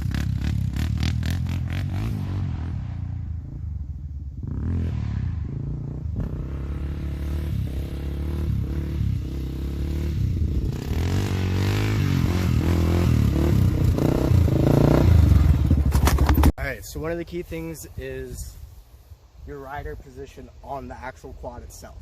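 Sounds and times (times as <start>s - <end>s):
quad engine revving: 0.0s - 3.2s, 4.4s - 16.5s.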